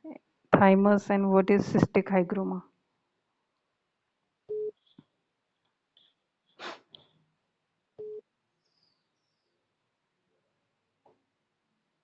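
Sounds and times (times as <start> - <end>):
breath-like noise: 6.6 - 6.9.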